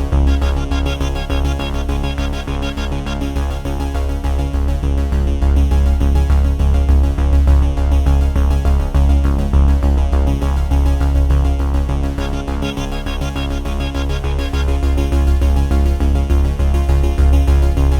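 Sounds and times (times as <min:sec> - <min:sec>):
upbeat electronic synthesizer music: 0:00.0 - 0:04.8, 0:10.4 - 0:17.9.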